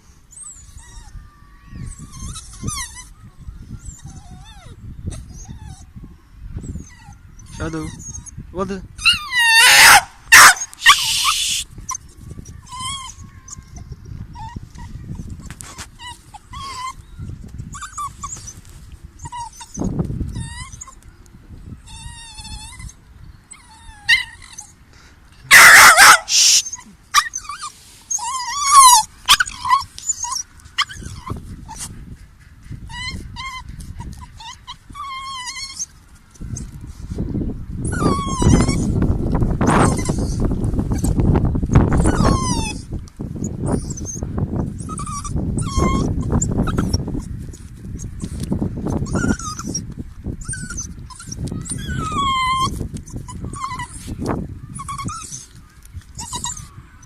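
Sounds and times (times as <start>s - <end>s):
dog whining: 0.3s - 5.9s, 9.0s - 12.0s, 15.6s - 17.1s, 19.2s - 21.0s, 21.8s - 24.8s, 25.5s - 31.8s, 32.9s - 35.9s, 37.8s - 39.0s, 39.6s - 41.2s, 41.8s - 44.2s, 44.8s - 47.3s, 48.0s - 57.0s.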